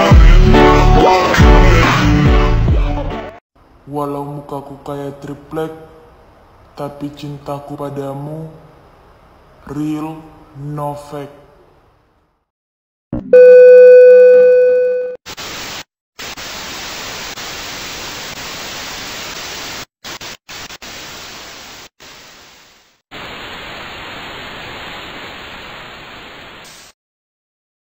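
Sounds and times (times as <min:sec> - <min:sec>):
loud steady beep tone: 0:13.3 - 0:15.2.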